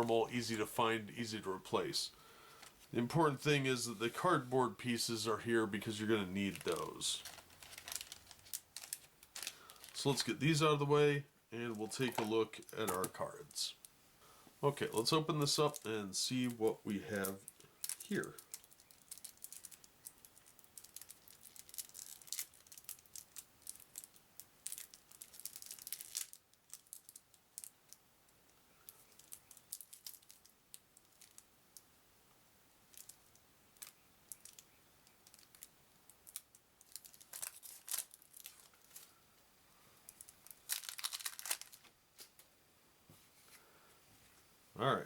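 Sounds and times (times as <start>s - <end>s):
card wrapping crinkling: 3.9s - 10.7s, 11.6s - 13.8s, 14.9s - 27.8s, 29.0s - 31.4s, 35.2s - 39.2s, 40.1s - 42.5s.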